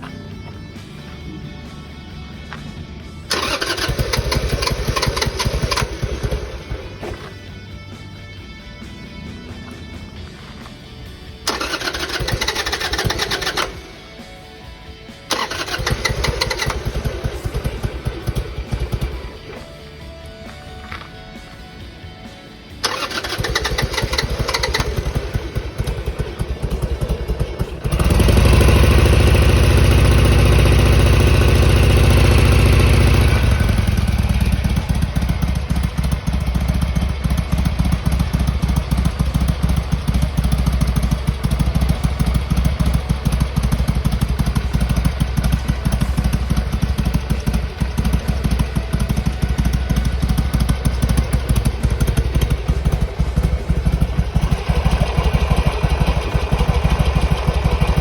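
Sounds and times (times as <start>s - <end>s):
motorcycle engine idling: 0.0s - 58.0s
starter motor cranking: 3.3s - 7.2s, 11.4s - 13.9s, 15.3s - 19.7s, 22.8s - 58.0s.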